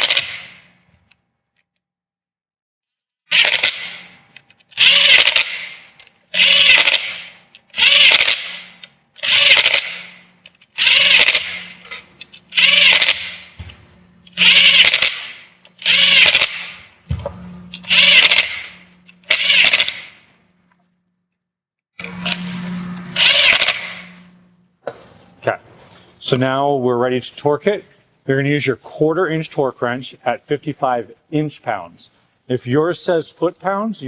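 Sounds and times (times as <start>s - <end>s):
cordless drill bursts: 4.8s - 5.7s, 6.3s - 8.6s, 9.2s - 10.2s, 10.8s - 11.6s, 12.5s - 13.5s, 14.3s - 16.8s, 17.9s - 20.1s, 23.2s - 24.1s.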